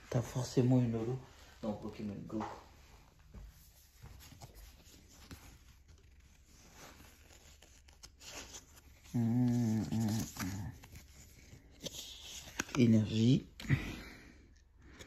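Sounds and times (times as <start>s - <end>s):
trading cards rustling: 4.0s - 13.9s.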